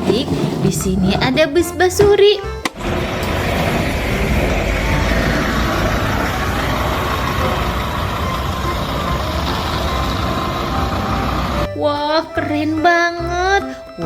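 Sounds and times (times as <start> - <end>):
steady rumbling with faint hum: 2.7 - 11.7.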